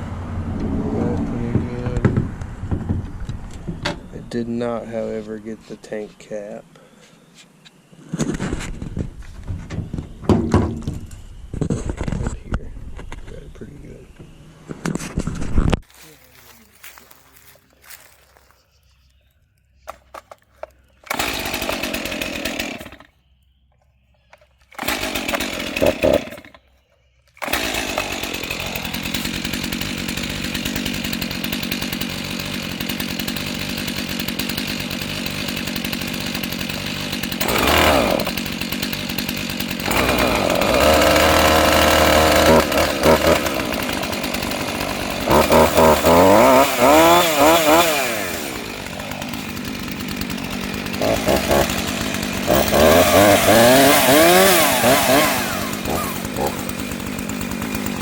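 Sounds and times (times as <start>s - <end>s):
chainsaw starting and revving: 0.1s - 2.3s, 16.2s - 18.2s, 20.6s - 23.1s, 24.7s - 26.6s, 27.4s - 58.0s.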